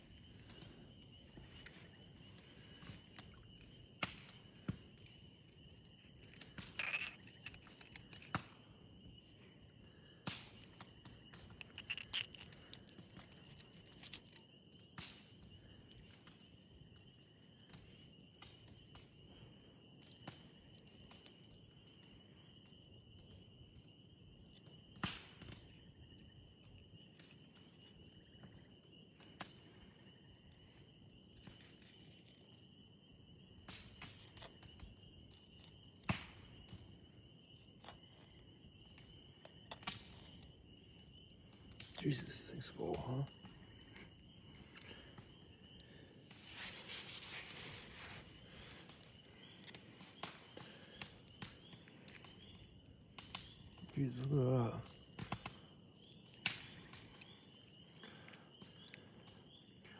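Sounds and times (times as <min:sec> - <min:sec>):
high-pitched insect trill: 0:00.0 - 0:14.9, 0:29.8 - 0:59.9.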